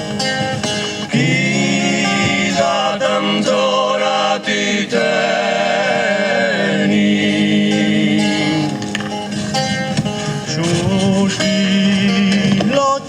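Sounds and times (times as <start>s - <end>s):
instrumental accompaniment: 0.0s - 13.0s
person singing long notes: 1.1s - 9.2s.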